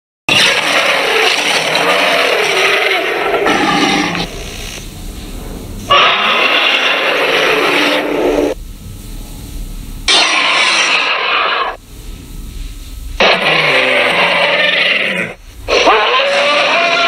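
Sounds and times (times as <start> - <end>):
dinosaur roaring: 0.3 - 4.3, 5.9 - 8.6, 10.1 - 11.8, 13.2 - 17.0.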